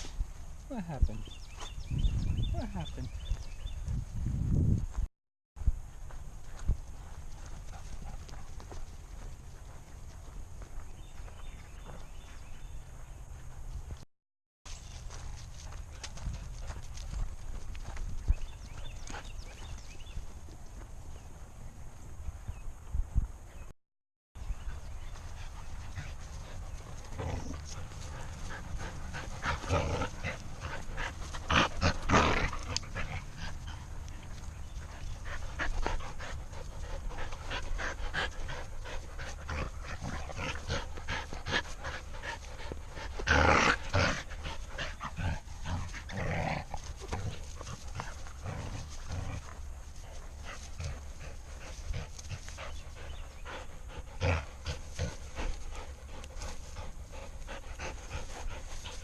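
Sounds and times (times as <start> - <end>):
dog panting: 24.5 - 59.0.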